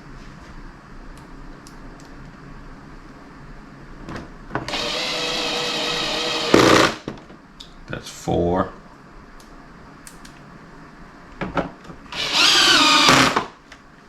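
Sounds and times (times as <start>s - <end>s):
power drill driving screw: 4.7s - 7.1s, 12.1s - 13.6s.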